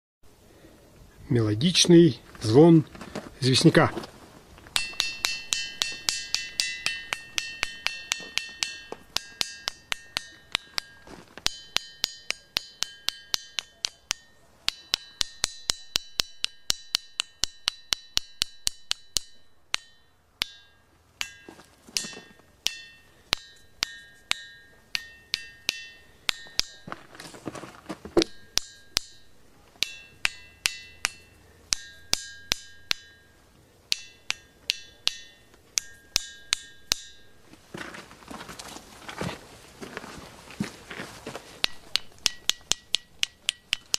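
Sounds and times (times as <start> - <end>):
ringing stone block struck: 4.7 - 27.1, 28.2 - 37.4, 41.6 - 43.9.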